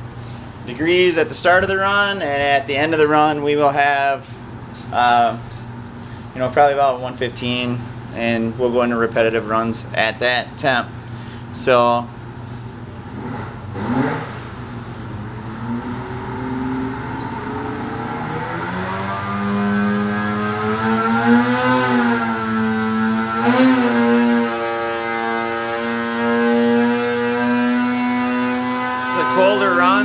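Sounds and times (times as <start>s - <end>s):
snowmobile engine revving: 13.2s - 14.4s, 15.2s - 30.0s.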